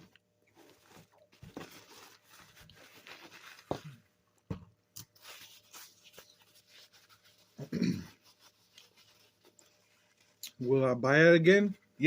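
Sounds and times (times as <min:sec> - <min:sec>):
handling sounds: 0:00.0 - 0:07.6.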